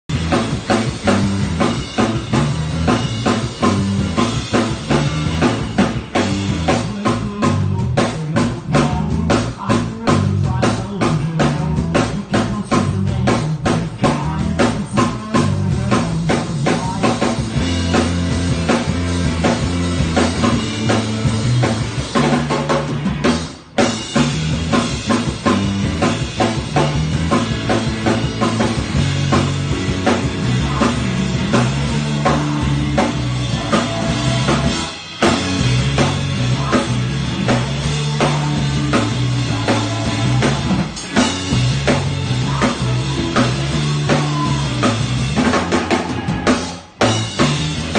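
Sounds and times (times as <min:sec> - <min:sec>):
band playing loud rock music: 0:00.0 - 0:47.9
rapid drum strikes: 0:00.1 - 0:47.9.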